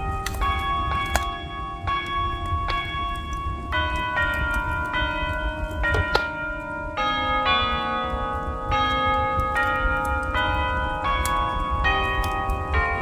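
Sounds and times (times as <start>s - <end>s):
crackling fire: 0.0s - 13.0s.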